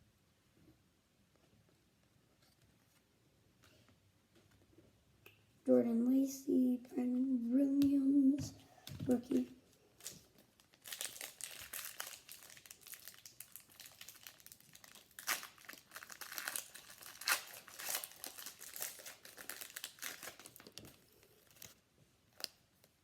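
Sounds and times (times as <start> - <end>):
plastic wrapper crinkling: 8.9 - 23.0.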